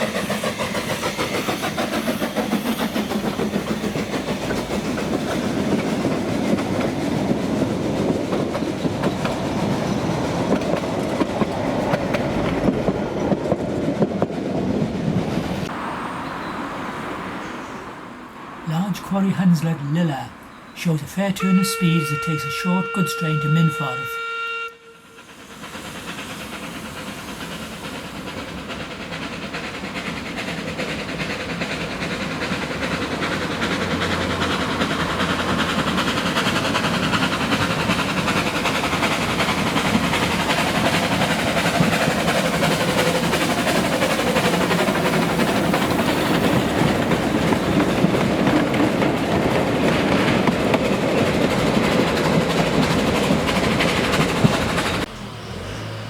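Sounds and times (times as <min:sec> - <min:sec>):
steam locomotive running: 0:00.0 - 0:17.4, 0:18.0 - 0:56.0
wagon wheels clattering on rails: 0:26.2 - 0:55.1.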